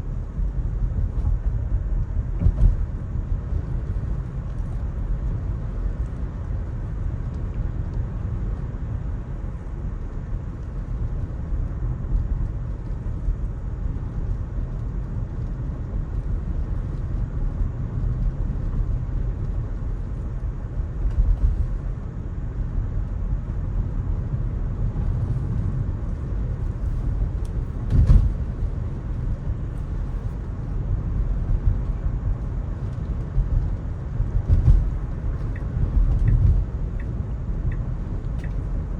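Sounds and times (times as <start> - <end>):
short thump: 2.4 - 2.8, 27.7 - 28.6, 34.5 - 35.0.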